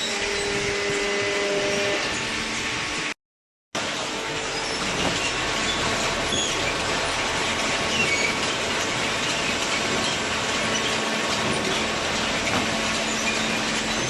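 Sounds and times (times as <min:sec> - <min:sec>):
short high squeaks: 0:04.4 - 0:06.9, 0:07.9 - 0:11.0.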